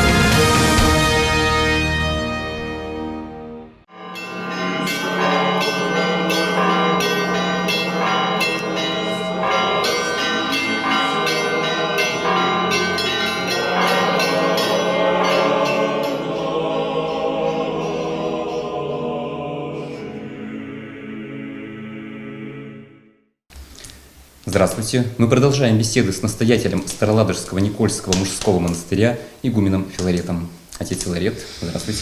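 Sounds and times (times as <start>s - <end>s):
church bells ringing: 3.9s - 19.3s.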